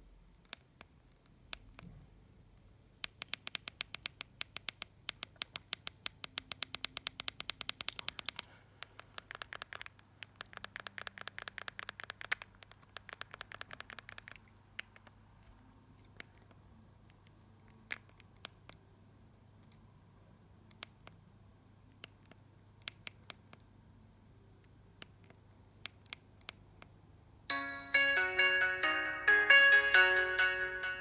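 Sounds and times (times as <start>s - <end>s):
rapid phone keypad clicks: 3.0s - 15.2s, 22.0s - 23.7s.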